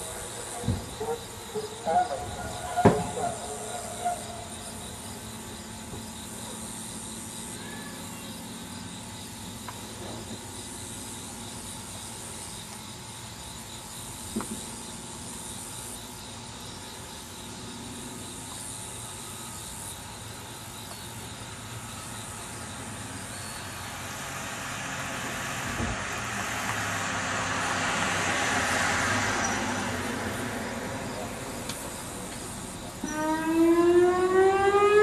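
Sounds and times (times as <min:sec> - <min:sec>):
vehicle driving past: 0:00.0 - 0:05.2, 0:22.9 - 0:35.0.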